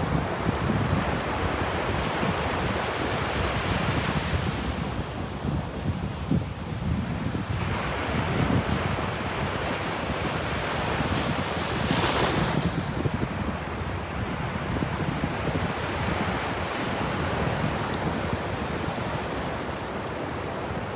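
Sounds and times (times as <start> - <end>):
wind rumble on microphone: 0.0 - 20.9
waves washing on shore: 6.4 - 20.9.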